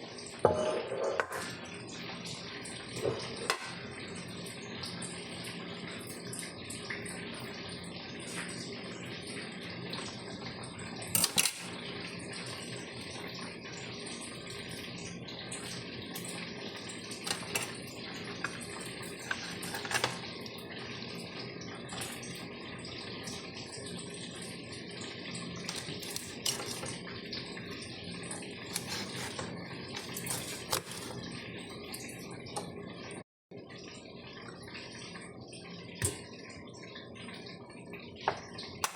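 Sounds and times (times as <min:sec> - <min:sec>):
kitchen tap running: 0:00.0 - 0:33.2, 0:33.8 - 0:38.9
dishes clinking and knocking: 0:00.4 - 0:01.6.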